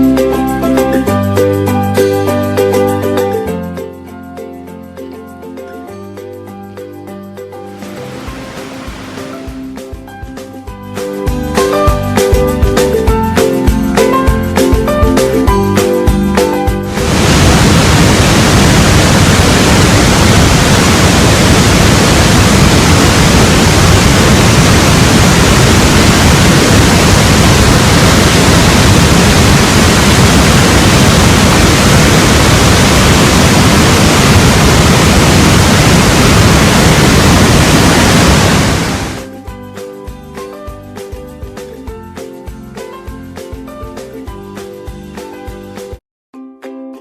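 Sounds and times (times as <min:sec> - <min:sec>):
waterfall rushing: 0:07.6 - 0:09.9, 0:16.9 - 0:39.2.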